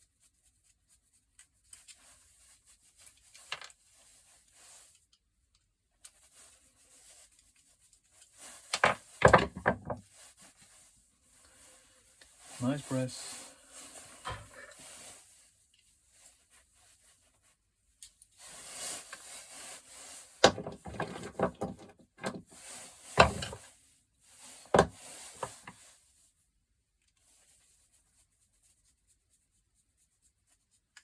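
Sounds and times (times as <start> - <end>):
metal parts scraping and rubbing: 20.4 - 23.7.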